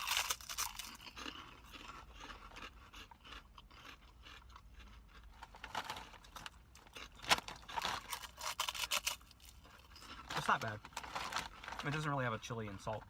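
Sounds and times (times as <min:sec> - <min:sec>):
people crunching and chewing: 0:00.0 - 0:13.0.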